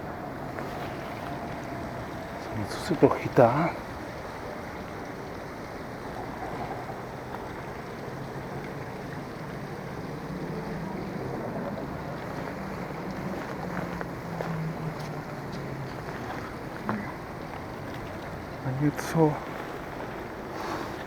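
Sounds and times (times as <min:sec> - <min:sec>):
low engine drone: 0:00.0 - 0:21.0
water noise: 0:00.0 - 0:21.0
wind: 0:00.0 - 0:21.0.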